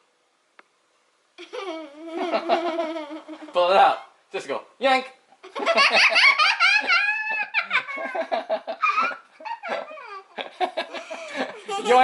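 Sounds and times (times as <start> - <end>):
girl laughing and squealing: 5.9 - 10.3.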